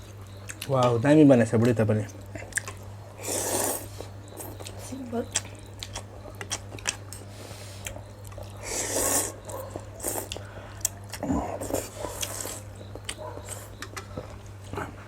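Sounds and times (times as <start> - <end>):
chewing: 0.0 - 0.8, 1.6 - 15.0
steady low hum: 0.0 - 15.0
slurping soup: 3.2 - 4.6, 8.6 - 12.7.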